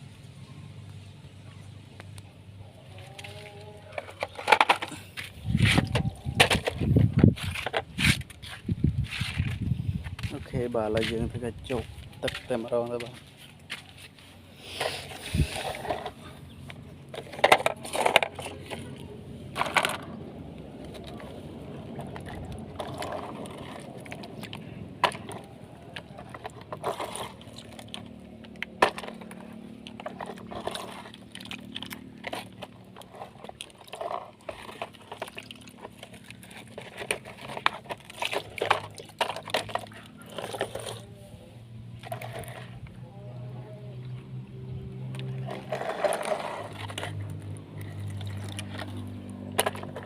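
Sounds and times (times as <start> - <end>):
water splashing and sloshing: 13.2 - 42.8, 44.8 - 50.0.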